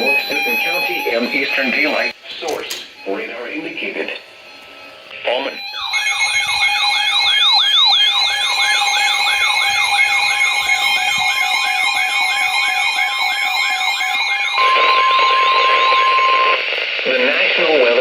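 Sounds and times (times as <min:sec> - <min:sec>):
steady warning alarm tone: 0:00.0 - 0:18.0
falling whoop siren alert: 0:05.6 - 0:16.6.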